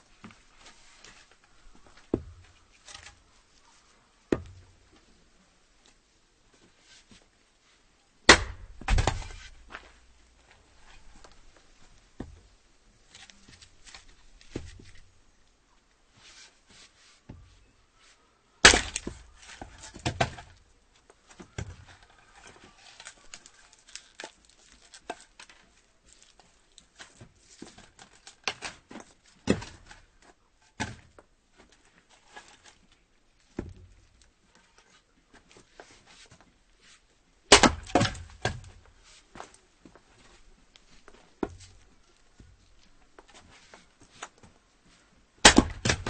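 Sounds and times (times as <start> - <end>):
wood being handled: 0.1 - 5.2, 8.3 - 15.4, 16.1 - 46.0
axe chopping firewood: 2.0 - 3.1, 4.3 - 4.6, 8.3 - 9.8, 18.6 - 20.5, 29.4 - 30.0, 37.5 - 39.5, 45.4 - 46.0
split wood pieces clattering: 18.6 - 20.6.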